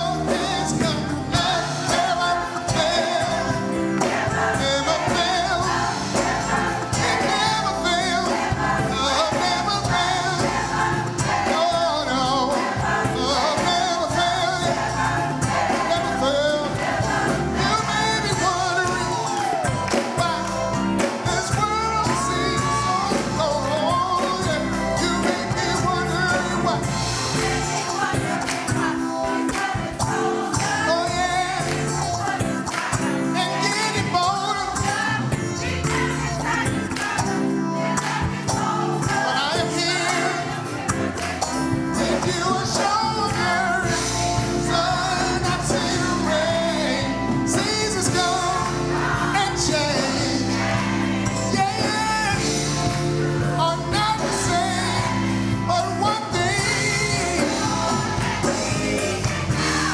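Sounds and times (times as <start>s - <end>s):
gospel music with singing: 0.0s - 59.9s.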